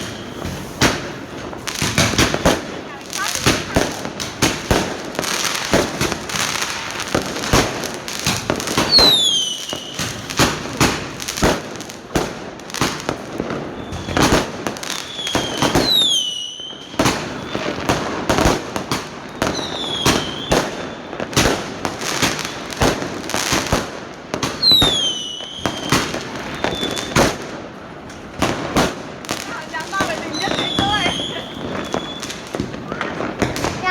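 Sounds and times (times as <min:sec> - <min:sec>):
fireworks bangs and crackles: 0:00.0 - 0:33.9
firework whistles falling in pitch: 0:08.8 - 0:10.3, 0:13.6 - 0:17.8, 0:19.3 - 0:21.2, 0:24.6 - 0:27.2, 0:30.4 - 0:33.3.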